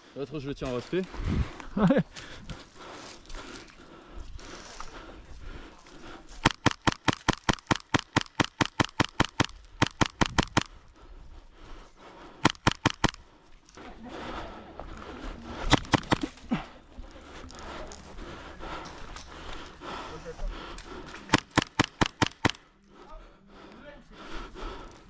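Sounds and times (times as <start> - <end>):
airsoft rifle firing bursts: 6.4 - 10.7, 12.4 - 13.2, 21.3 - 22.6.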